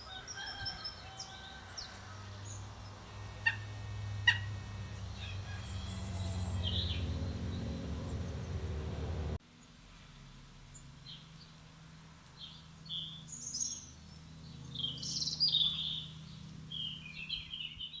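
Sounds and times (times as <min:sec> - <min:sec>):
songbird chirping and warbling: 0:00.0 - 0:09.4, 0:12.4 - 0:18.0.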